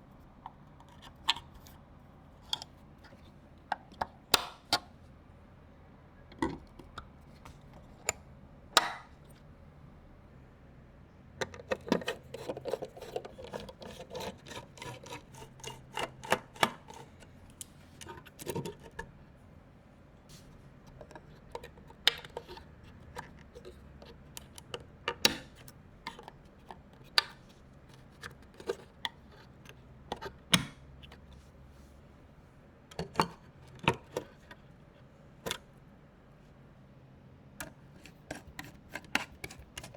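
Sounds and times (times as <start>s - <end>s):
plastic and metal clicks and taps: 3.7s - 4.9s.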